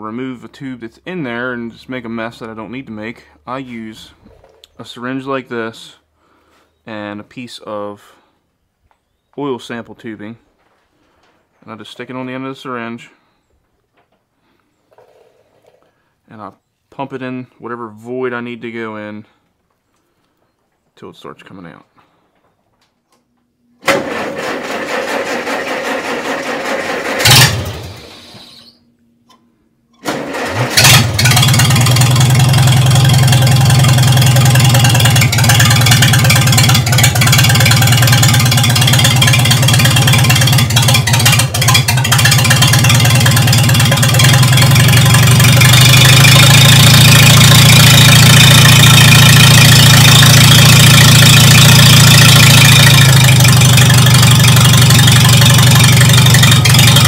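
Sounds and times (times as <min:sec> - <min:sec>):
engine cranking: 0:23.8 - 0:28.7, 0:30.0 - 0:57.0
engine running: 0:23.8 - 0:28.7, 0:30.0 - 0:57.0
engine backfire bang: 0:26.3 - 0:28.6.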